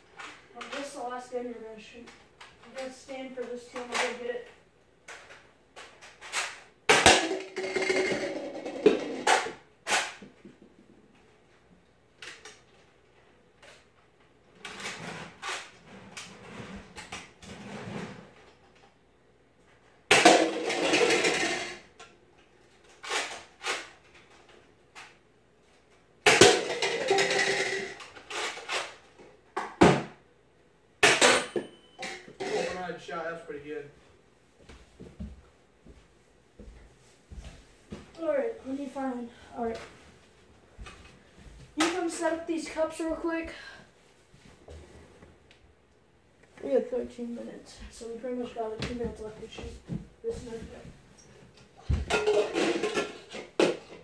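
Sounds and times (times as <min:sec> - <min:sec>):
plastic cups clattering over: 0:06.3 - 0:10.2, 0:20.1 - 0:22.0, 0:26.3 - 0:30.0, 0:51.9 - 0:54.0.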